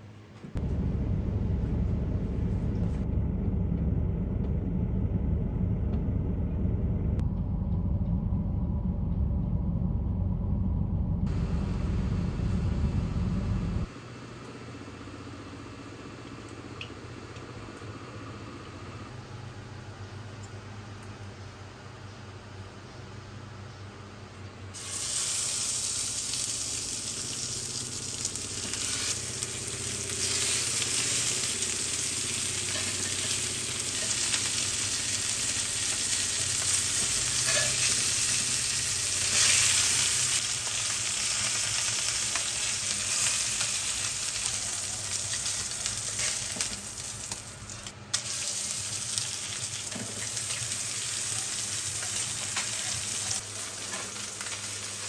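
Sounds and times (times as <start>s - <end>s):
food sizzling in hot oil: 24.8s - 55.0s.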